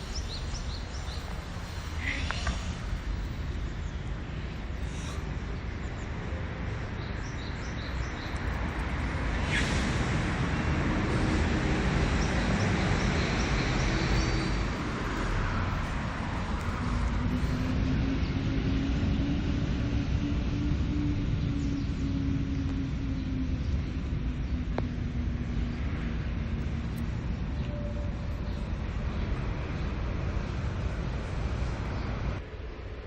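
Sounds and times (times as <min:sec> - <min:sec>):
small birds chirping: 0:00.0 - 0:09.1, 0:11.9 - 0:18.7
passing vehicle hum: 0:00.0 - 0:33.0
road traffic noise: 0:00.0 - 0:33.0.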